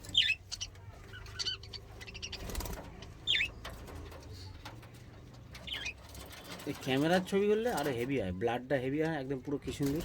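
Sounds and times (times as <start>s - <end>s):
budgerigars chirping: 0.0s - 3.6s, 5.6s - 6.4s.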